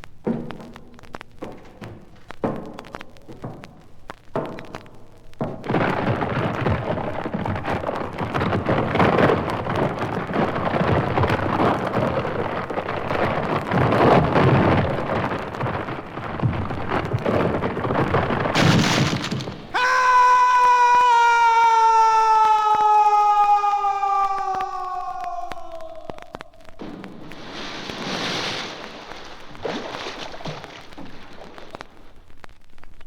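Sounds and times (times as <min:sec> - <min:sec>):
wooden bridge crackling and splintering: 0:00.0 - 0:33.0
falling pitched cry: 0:19.7 - 0:26.8.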